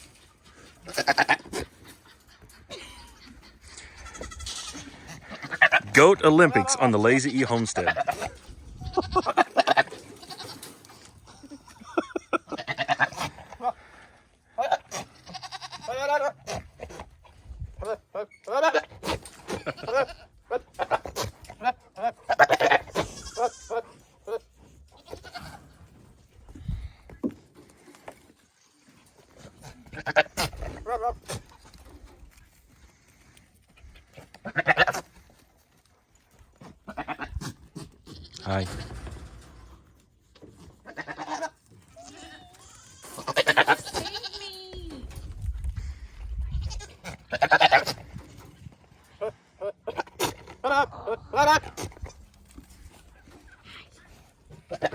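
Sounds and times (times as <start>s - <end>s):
goat sputtering calls: 0.6s - 5.9s, 40.6s - 44.4s
goat stuttering calls: 0.6s - 6.9s, 17.9s - 25.8s, 40.6s - 45.1s
goat bleating: 0.7s - 16.6s, 17.8s - 25.8s, 29.4s - 31.6s, 34.1s - 35.2s, 36.7s - 39.1s, 40.6s - 45.2s, 46.4s - 48.2s.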